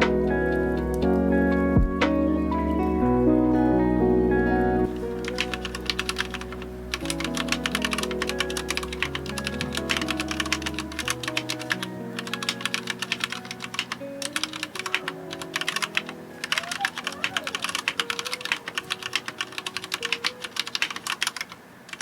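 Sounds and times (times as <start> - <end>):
soft lo-fi music: 0.0 - 21.4
mechanical keyboard key clacks: 5.2 - 22.0.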